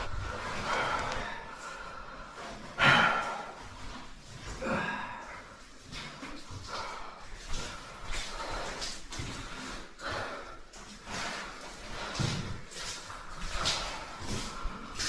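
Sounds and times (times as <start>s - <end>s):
person breathing hard and grunting: 0.0s - 3.8s, 4.5s - 5.7s.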